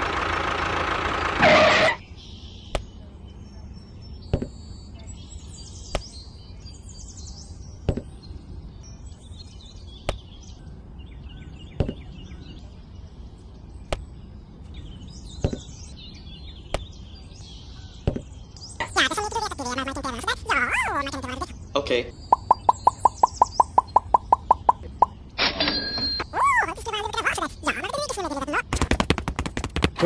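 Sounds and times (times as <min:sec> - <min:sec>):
low steady background noise: 0:02.0 - 0:23.6
birds chirping: 0:02.0 - 0:25.3, 0:26.2 - 0:30.0
sharp impacts: 0:28.7 - 0:30.0.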